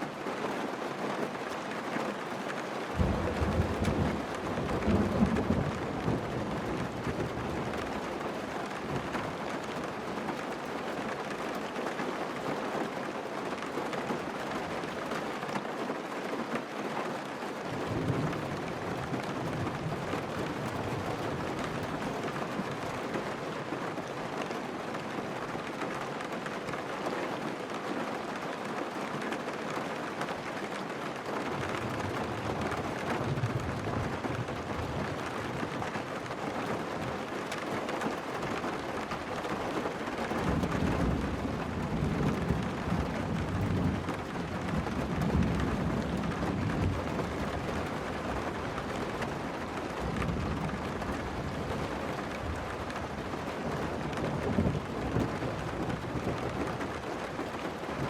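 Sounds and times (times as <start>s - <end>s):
rain falling steadily: 0.0s - 58.0s
low rolling thunder: 3.0s - 8.1s, 40.4s - 49.3s.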